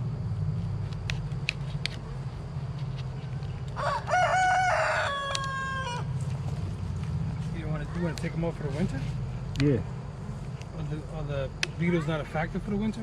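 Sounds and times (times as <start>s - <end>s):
rooster crowing: 3.7s - 6.4s.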